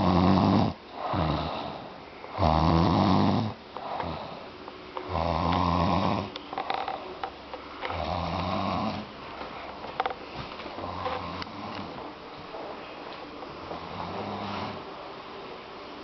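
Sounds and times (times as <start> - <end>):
woman snoring: 0.0 - 4.5, 5.1 - 6.3, 7.9 - 9.1, 13.8 - 14.8.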